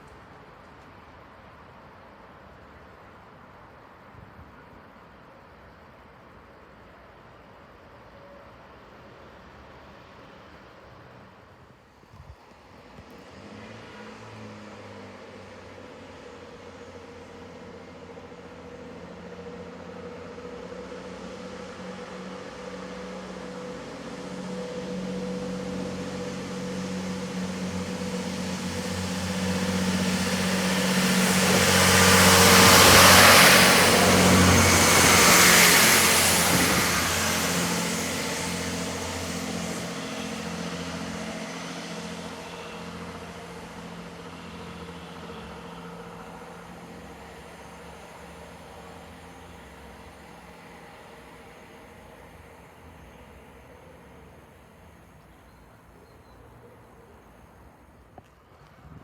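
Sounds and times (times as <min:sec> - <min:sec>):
diesel train engine: 0:12.7 - 0:58.8
train wheels rushing on rail: 0:25.1 - 0:40.3.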